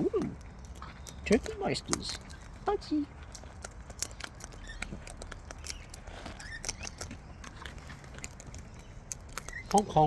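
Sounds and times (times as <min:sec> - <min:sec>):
beaks pecking seed in bucket: 0:03.9 - 0:10.0.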